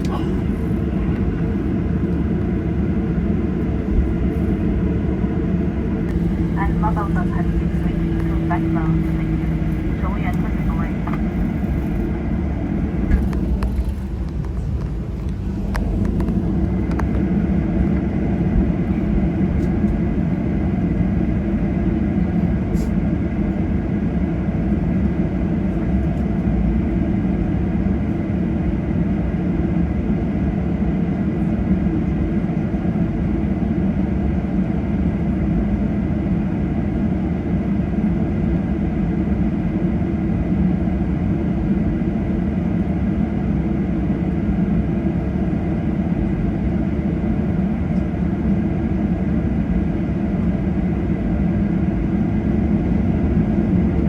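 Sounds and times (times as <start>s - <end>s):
airplane cabin engine rumble: 0.0s - 54.0s.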